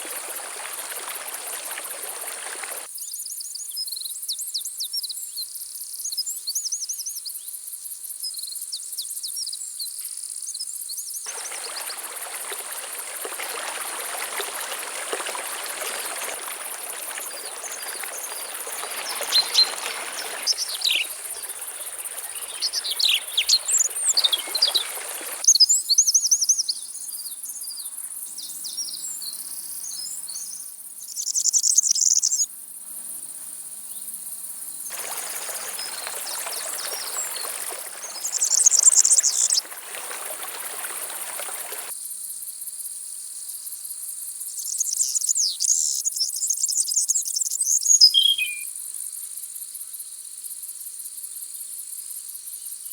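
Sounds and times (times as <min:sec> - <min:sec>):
birds chirping and trilling: 0:00.0 - 0:02.9, 0:11.3 - 0:25.4, 0:34.9 - 0:41.9
insects droning: 0:00.0 - 0:02.9, 0:11.3 - 0:25.4, 0:34.9 - 0:41.9.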